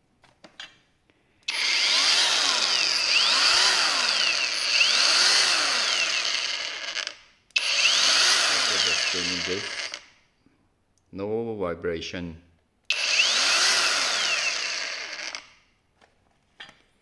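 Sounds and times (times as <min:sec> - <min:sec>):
angle grinder whining: 0:01.5 - 0:10.1, 0:12.9 - 0:15.5.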